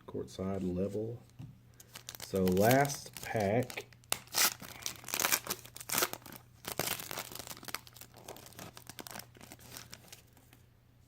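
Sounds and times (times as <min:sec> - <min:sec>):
wrapper tearing and crinkling: 0:01.8 - 0:10.4.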